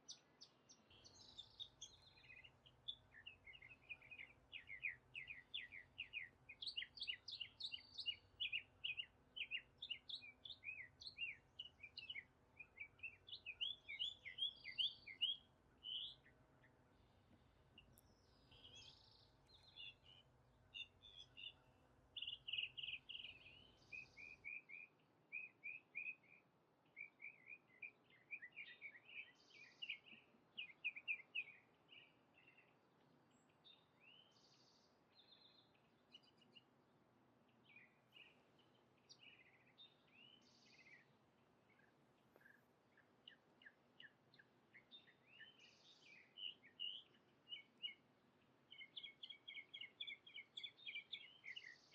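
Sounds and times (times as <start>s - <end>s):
birds chirping: 0.0s - 36.7s, 37.6s - 51.9s.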